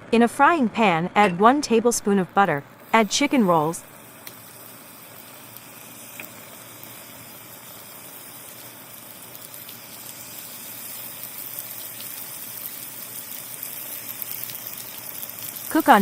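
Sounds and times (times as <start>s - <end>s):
food sizzling in a pan: 2.8s - 16.0s
crackles and pops: 3.2s - 16.0s.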